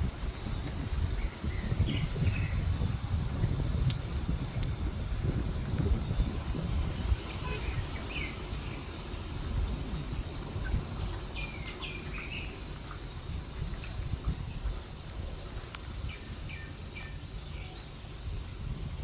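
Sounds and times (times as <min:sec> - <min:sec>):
wind rumble on microphone: 0:00.0 - 0:19.0
birds chirping: 0:00.2 - 0:03.6, 0:05.4 - 0:18.7.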